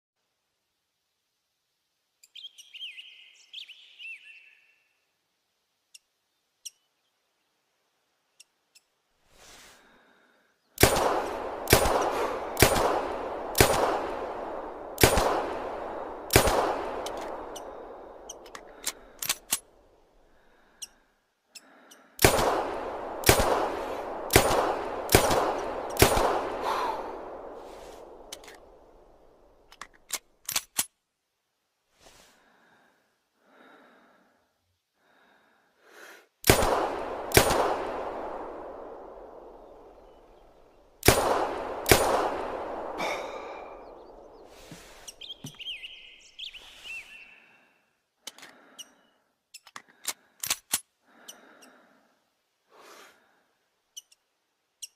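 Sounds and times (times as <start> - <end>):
bird chirping: 2.1 - 5.2, 5.8 - 9.1, 43.4 - 47.9, 53.9 - 54.9
pistol shots echoing: 10.8 - 19.4, 22.2 - 29.4, 36.4 - 44.4.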